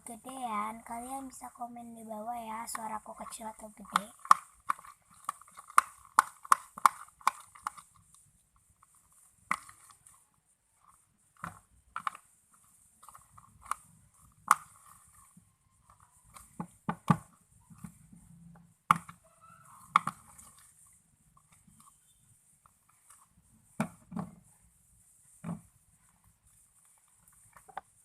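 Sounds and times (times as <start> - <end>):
slime being stirred clicking: 2.6 - 8.1.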